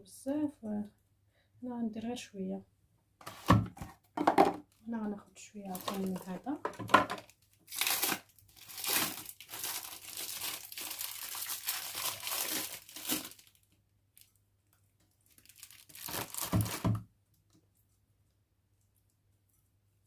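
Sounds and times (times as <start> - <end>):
wrapper crinkling and tearing: 5.7 - 6.5, 7.1 - 14.3, 15.2 - 17.0.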